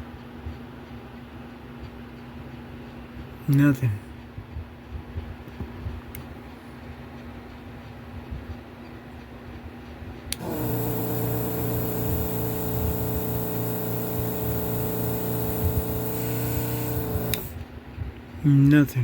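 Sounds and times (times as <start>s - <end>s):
vacuum pump humming: 10.3s - 17.7s
air hissing at nozzle: 10.4s - 17.6s.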